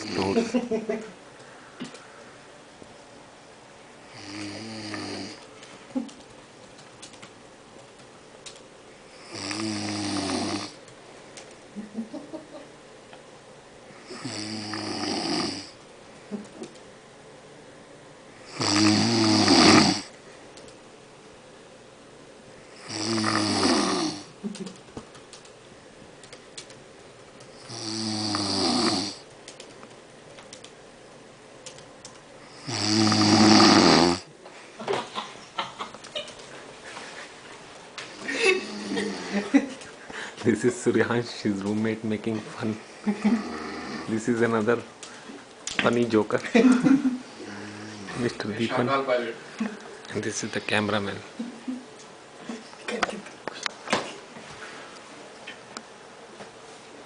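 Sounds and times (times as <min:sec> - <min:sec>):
man snoring: 0:00.0 - 0:00.4, 0:04.1 - 0:05.4, 0:09.1 - 0:10.8, 0:14.0 - 0:15.8, 0:18.4 - 0:20.1, 0:22.8 - 0:24.4, 0:27.6 - 0:29.2, 0:32.5 - 0:34.3, 0:38.6 - 0:39.4, 0:43.2 - 0:44.1
quiet breathing: 0:40.0 - 0:40.5, 0:47.3 - 0:48.3.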